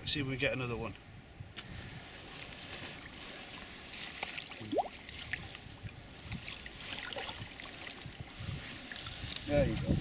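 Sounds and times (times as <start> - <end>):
water splashing and trickling: 2.0 - 10.0
wind rumble on microphone: 4.7 - 10.0.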